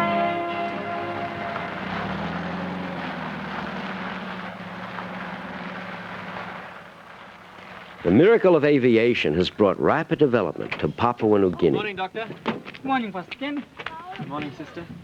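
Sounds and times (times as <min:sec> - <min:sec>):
music: 0:00.0 - 0:01.8
propeller aircraft engine droning: 0:00.0 - 0:08.0.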